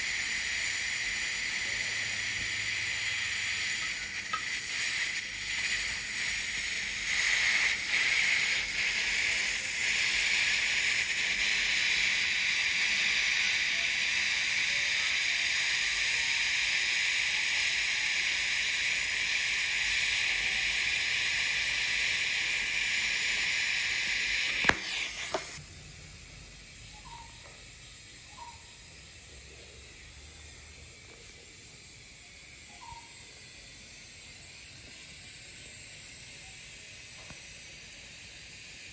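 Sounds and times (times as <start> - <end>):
welding arc hissing: 0.0 - 38.9
sharp click: 24.4 - 25.6.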